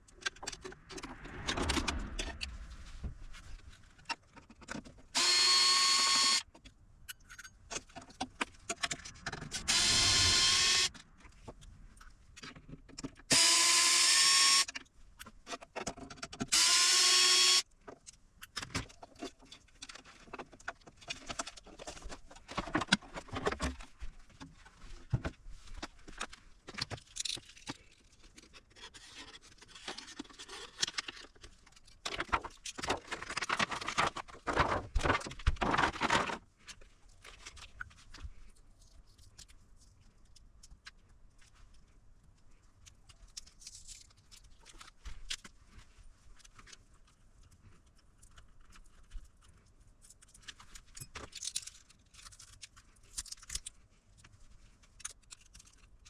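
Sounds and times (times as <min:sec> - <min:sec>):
small clicks of screws and parts: 0:04.0 - 0:23.8, 0:46.4 - 0:56.0
electric screwdriver running: 0:05.2 - 0:06.4, 0:09.7 - 0:10.9, 0:13.3 - 0:14.7, 0:16.5 - 0:17.6.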